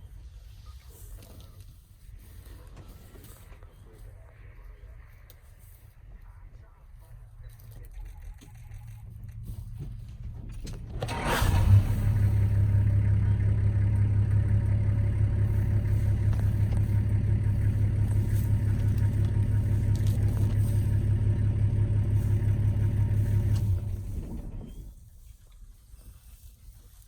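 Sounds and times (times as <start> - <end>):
vehicle engine starting and idling: 7.9 - 25.2.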